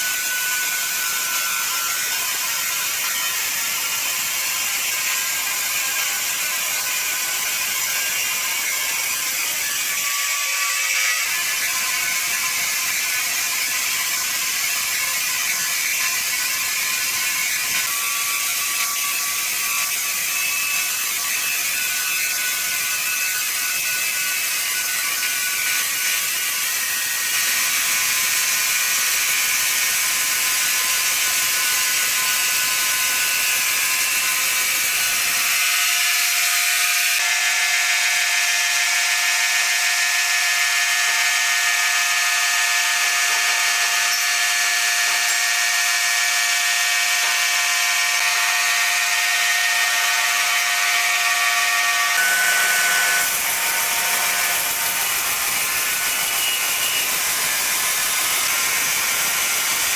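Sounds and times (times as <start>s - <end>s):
saw whining: 0.0s - 59.9s
sawmill machinery running: 0.0s - 59.9s.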